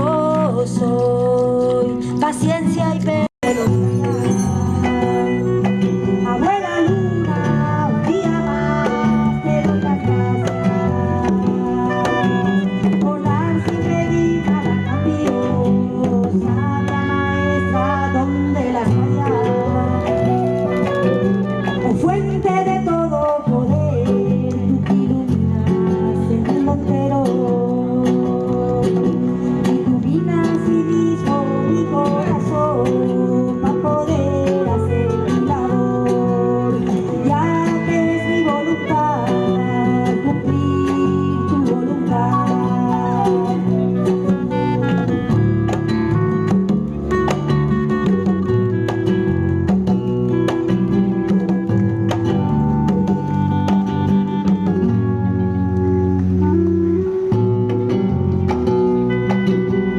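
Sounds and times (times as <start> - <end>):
person singing: 0.0 - 46.5
plucked guitar: 0.0 - 59.9
wavering melody line: 3.4 - 12.7.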